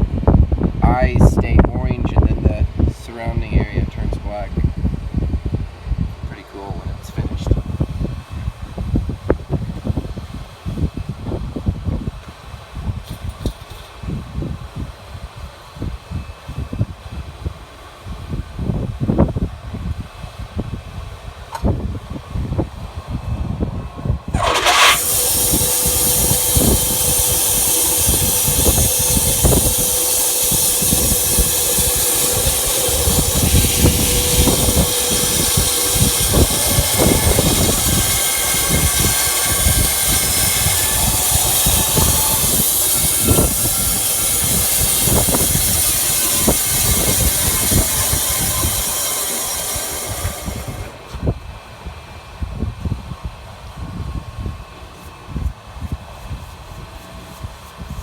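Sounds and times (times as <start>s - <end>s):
sawmill engine running: 24.3s - 51.3s
band saw blade cutting wood: 24.4s - 51.2s.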